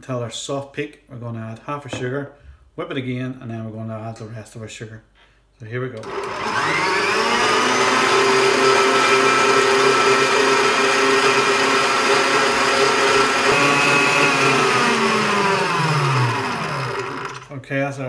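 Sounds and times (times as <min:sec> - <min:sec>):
electric mixer motor whining: 0:06.0 - 0:17.5.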